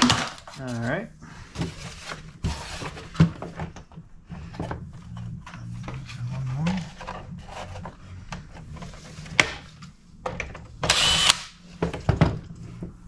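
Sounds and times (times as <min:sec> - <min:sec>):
small power driver whirring: 0:10.9 - 0:11.6.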